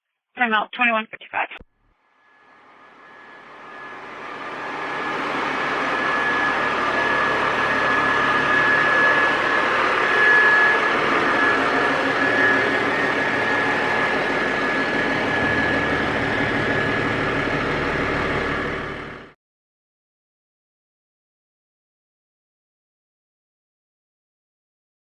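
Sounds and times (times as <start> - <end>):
high-pitched whine: 2.1 - 19.3
heavy vehicle engine running: 2.5 - 19.4.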